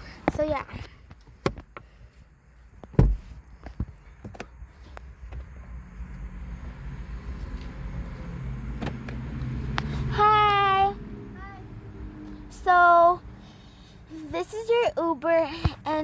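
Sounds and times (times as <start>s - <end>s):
car engine humming: 0.0s - 16.0s
heavy thump: 2.8s - 3.9s.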